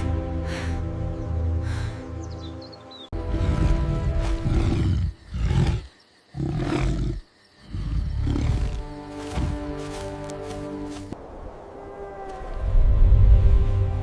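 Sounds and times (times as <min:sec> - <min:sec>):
music: 0:00.0 - 0:05.6, 0:08.2 - 0:11.2, 0:12.7 - 0:14.0
deep rough animal roar: 0:03.3 - 0:08.9.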